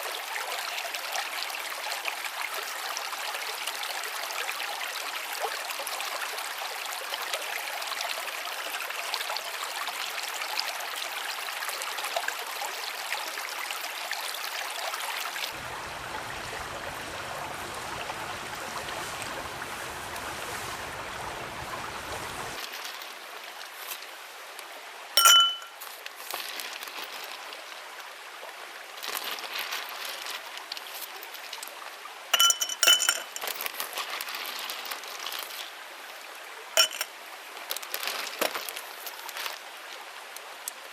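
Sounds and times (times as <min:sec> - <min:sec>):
ice clinking in a glass: 0:25.2 - 0:25.8, 0:32.4 - 0:33.6, 0:36.8 - 0:37.1.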